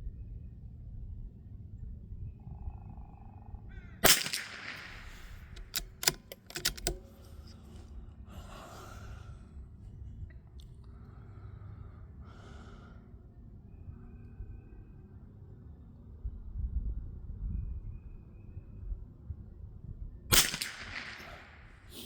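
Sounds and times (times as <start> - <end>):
rifle shot: 4.0 - 7.0, 20.3 - 21.7
rifle bolt clicks: 4.0 - 7.4.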